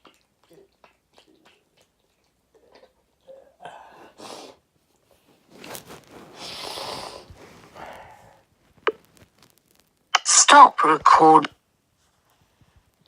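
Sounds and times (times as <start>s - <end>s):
gasping in-breaths: 3.2s - 4.6s, 6.4s - 8.5s.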